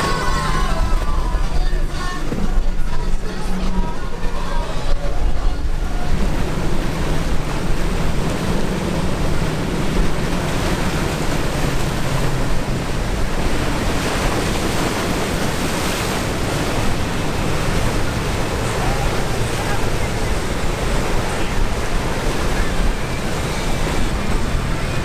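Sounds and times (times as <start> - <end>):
low drone: 0.0 - 25.0
surf breaking: 0.0 - 25.0
wind buffeting microphone: 0.0 - 25.0.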